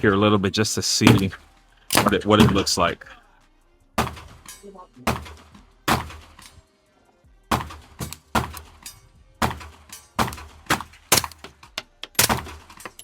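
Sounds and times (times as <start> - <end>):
suppressed gunshots: 1.1 - 2.9, 4.0 - 4.5, 5.1 - 6.6, 7.5 - 13.0.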